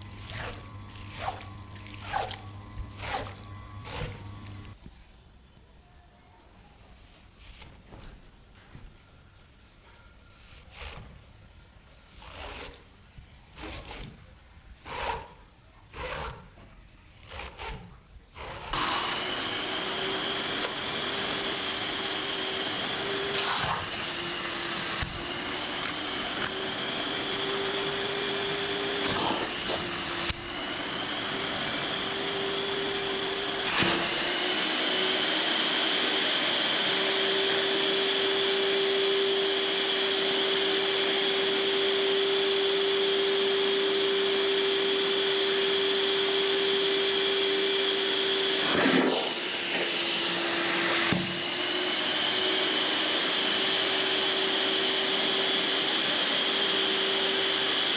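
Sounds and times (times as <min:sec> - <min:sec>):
cleaning machine motor whine: 0:00.0 - 0:04.8, 0:18.7 - 0:57.9
scrubbing a rug: 0:00.0 - 0:04.8, 0:18.7 - 0:34.3.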